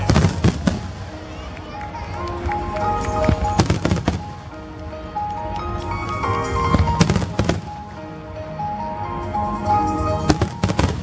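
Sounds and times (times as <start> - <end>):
fireworks bursting: 0.0 - 1.3, 2.9 - 4.4, 6.6 - 7.9, 10.3 - 11.0
music with held melodic notes: 0.0 - 11.0.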